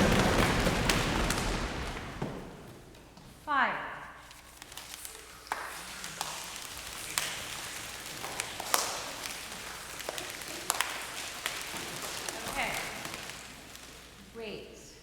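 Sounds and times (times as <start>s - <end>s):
crowd hissing: 0.0s - 3.1s, 4.6s - 14.4s
finger snaps and claps: 5.2s - 12.4s.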